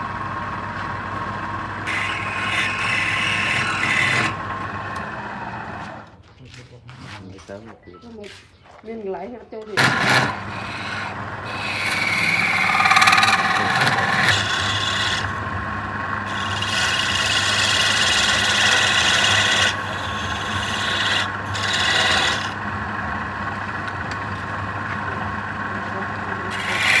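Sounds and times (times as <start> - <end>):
wood lathe motor hum: 0.0 - 6.1, 9.8 - 27.0
turning tool scraping wood: 1.8 - 6.0, 9.7 - 15.5, 16.2 - 22.7, 25.8 - 27.0.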